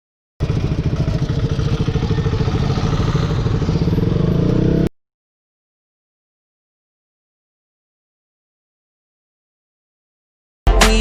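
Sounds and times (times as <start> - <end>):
motorcycle engine running: 0.4 - 4.9.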